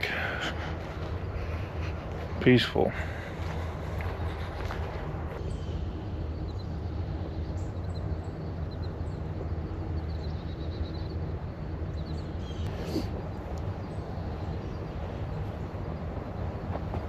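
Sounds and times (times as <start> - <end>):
machinery droning: 0.0 - 17.0
bird chirps: 5.4 - 16.1.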